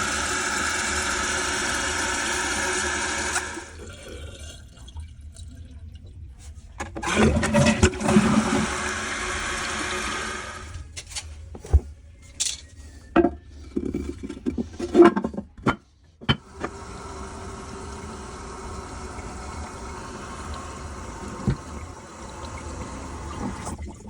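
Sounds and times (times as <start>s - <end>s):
water hissing into toilet tank: 0.0s - 5.3s, 7.0s - 10.8s, 16.4s - 24.0s.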